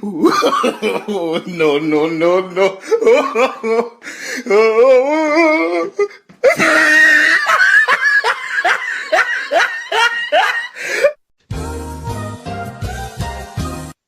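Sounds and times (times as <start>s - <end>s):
bass-heavy music: 11.5s - 14.0s.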